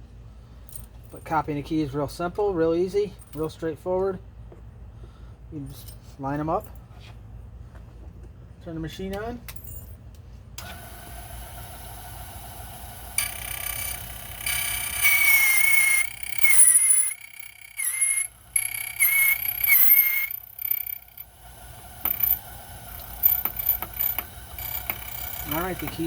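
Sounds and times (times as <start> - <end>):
key cutting machine motor hum: 10.6 - 26.0
cutter screeching on metal: 13.2 - 26.0.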